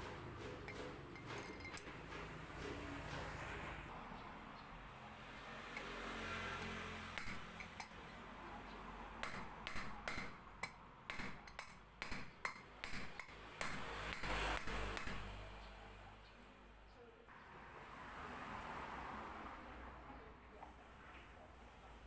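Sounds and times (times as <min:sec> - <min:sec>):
metal parts and tools clinking: 0:00.4 - 0:02.4.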